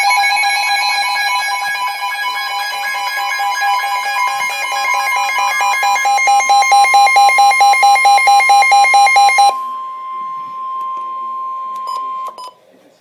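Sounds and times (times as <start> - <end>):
rapid electronic beeping: 0.0 - 9.6
steady warning alarm tone: 0.0 - 12.4.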